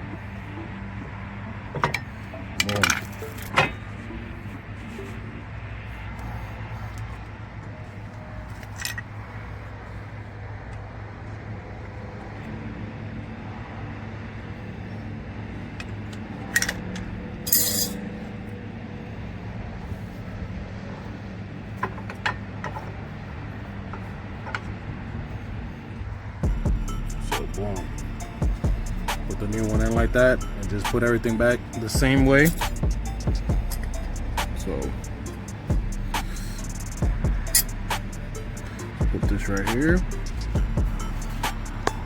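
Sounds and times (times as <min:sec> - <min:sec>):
steady low hum: 0:00.0 - 0:42.0
metal-on-metal clinks: 0:17.5 - 0:18.1, 0:37.4 - 0:37.9.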